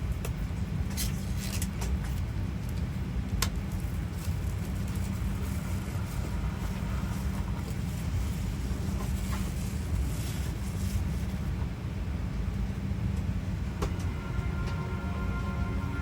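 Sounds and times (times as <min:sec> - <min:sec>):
airliner cabin rumble: 0:00.0 - 0:16.0.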